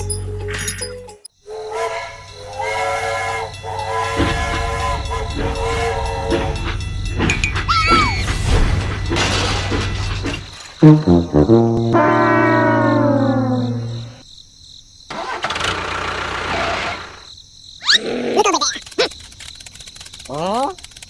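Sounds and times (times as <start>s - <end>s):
held horn-like tones: 1.3s - 14.2s.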